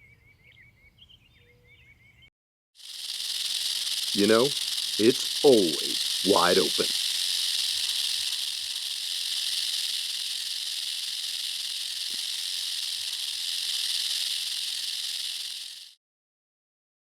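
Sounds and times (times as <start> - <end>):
high-pitched hiss: 2.8 - 16.0.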